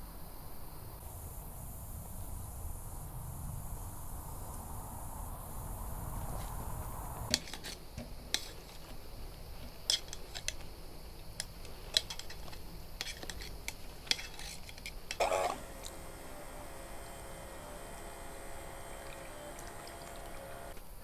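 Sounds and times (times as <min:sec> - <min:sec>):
metal cutlery clinking: 0:07.3 - 0:09.0, 0:09.6 - 0:10.6, 0:11.4 - 0:15.2.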